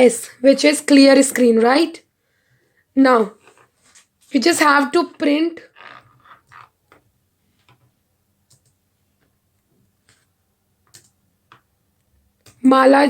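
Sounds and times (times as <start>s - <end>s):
computer keyboard keystrokes: 8.5s - 8.8s, 10.9s - 11.6s.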